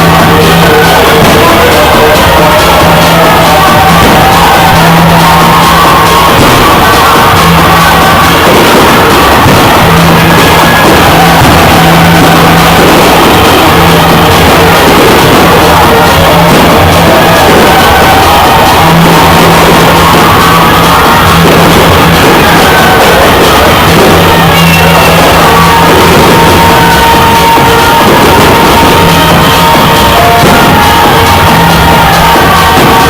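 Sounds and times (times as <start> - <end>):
crowd shouting: 0.0 - 33.0
loud music: 0.0 - 33.0.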